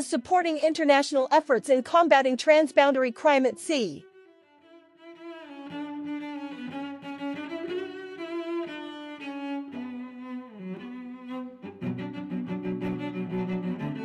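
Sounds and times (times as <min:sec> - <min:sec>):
bowed strings music: 0:02.8 - 0:14.0.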